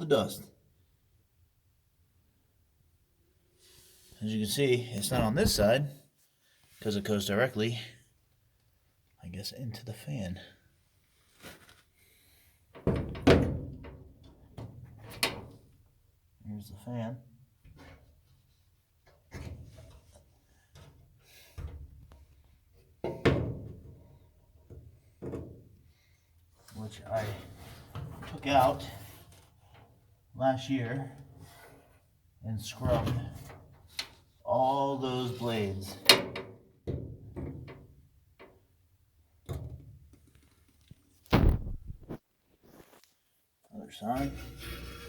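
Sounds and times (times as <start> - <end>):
irregular knocks and thunks: 41.3 - 42.2
loud thud: 41.3 - 42.2.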